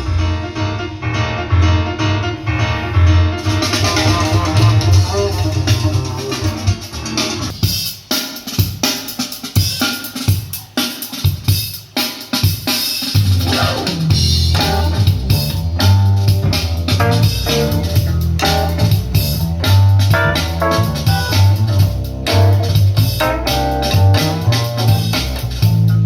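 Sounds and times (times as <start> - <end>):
heavy bass line: 0.0 - 7.5, 13.3 - 26.0
recorded band music over speakers: 0.0 - 26.0
drum hits: 11.3 - 26.0.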